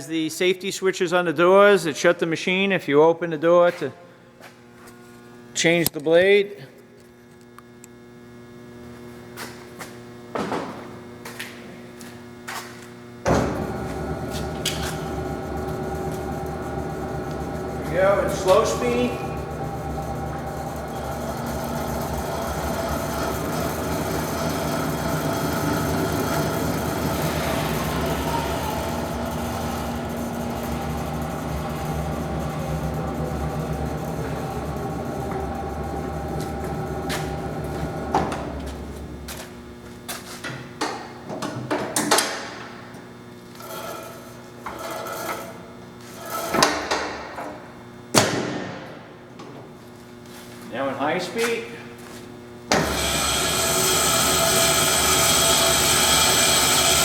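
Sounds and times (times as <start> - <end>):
bandsaw motor humming: 12.8 - 41.3, 43.1 - 48.1, 51.0 - 57.0
gear clunks and knocks: 13.3 - 39.7.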